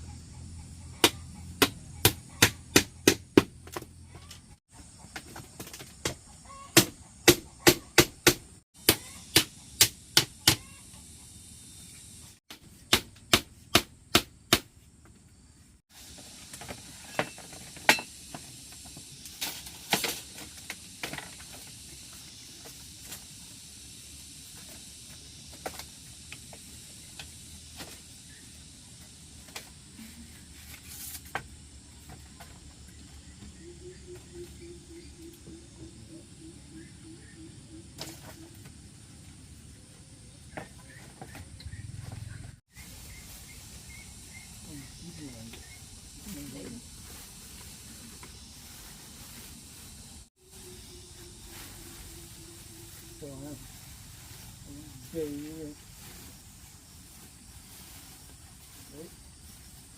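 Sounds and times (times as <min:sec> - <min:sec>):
hand tool striking wood: 0:01.0 - 0:03.9, 0:05.2 - 0:10.6, 0:12.5 - 0:14.7.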